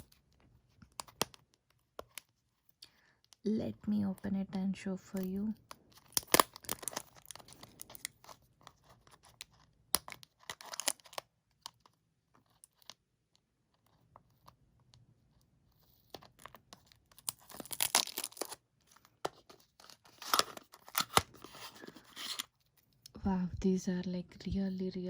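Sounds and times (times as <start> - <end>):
cardboard packaging tearing: 6.0 - 8.4, 10.1 - 11.2, 17.1 - 18.6, 19.3 - 22.5.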